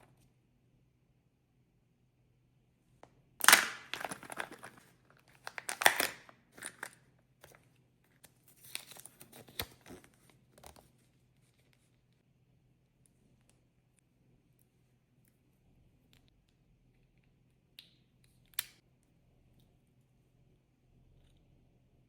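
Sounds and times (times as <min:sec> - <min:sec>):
plastic wrapper tearing and crinkling: 0:03.4 - 0:07.0, 0:08.5 - 0:10.0.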